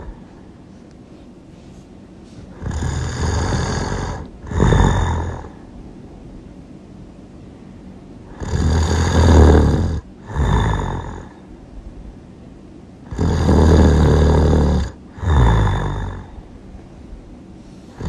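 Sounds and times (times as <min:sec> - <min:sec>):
loud rattling snoring: 0:00.0 - 0:00.2, 0:02.5 - 0:05.7, 0:08.2 - 0:11.5, 0:13.0 - 0:16.5, 0:17.7 - 0:18.0.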